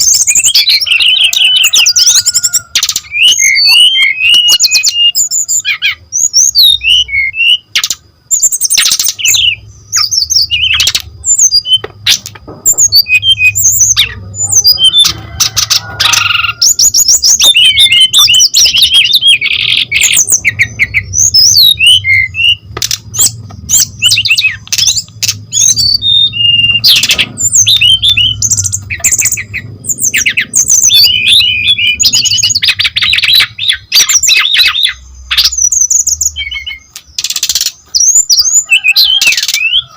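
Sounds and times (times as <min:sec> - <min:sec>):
bird singing chirps and trills: 0:00.0 - 0:39.9.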